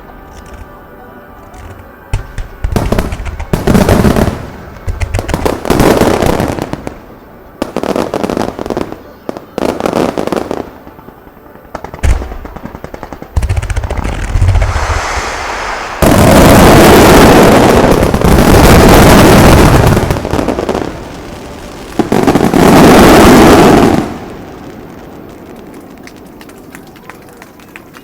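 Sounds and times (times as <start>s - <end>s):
dense continuous firework explosions: 0.0s - 28.0s
fireworks popping rapidly: 1.5s - 6.5s, 11.8s - 28.0s
firework bang: 12.0s - 26.2s.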